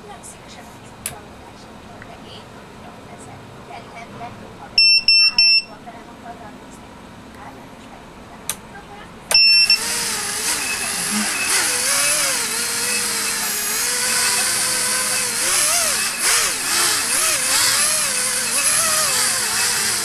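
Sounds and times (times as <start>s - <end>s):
drone motors whining: 9.3s - 20.0s.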